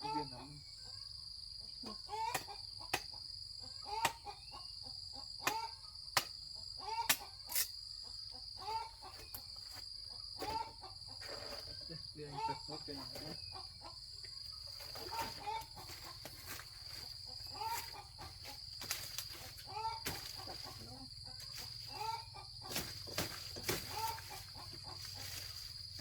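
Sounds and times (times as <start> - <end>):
chickens clucking: 0.0 - 0.6, 1.6 - 26.0
machete chopping sugarcane: 2.3 - 3.1, 4.0 - 4.2, 5.4 - 6.4, 7.1 - 7.7, 20.0 - 20.7, 22.7 - 24.4.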